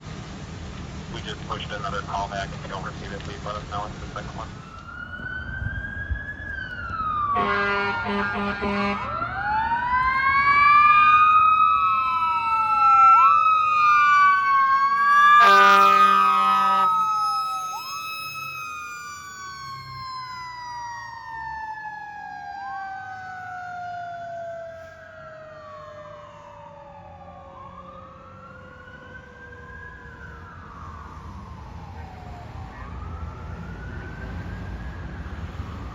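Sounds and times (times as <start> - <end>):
sirens sweeping up and down: 1.1 - 35.9
air horn blasts: 7.4 - 9.1, 15.4 - 17.0.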